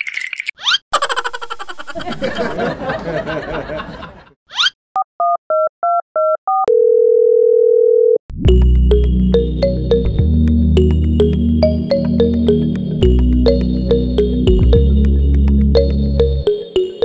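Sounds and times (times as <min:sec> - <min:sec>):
steady dial tone: 0:06.5 - 0:08.2
music: 0:08.3 - 0:17.0.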